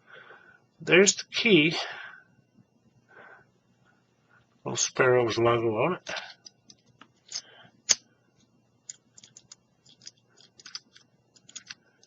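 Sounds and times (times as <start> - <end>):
key and lock clicking: 9.2 - 11.8.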